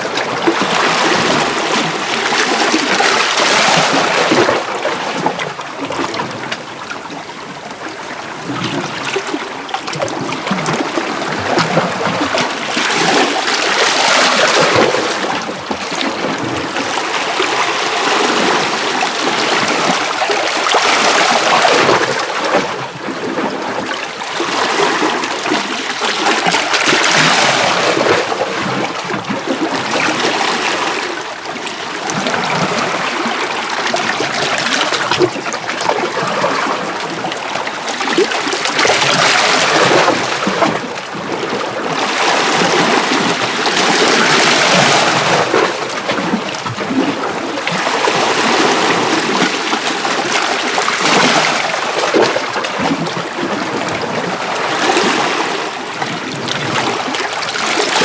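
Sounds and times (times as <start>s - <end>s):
waves washing over rocks: 0.0s - 6.8s.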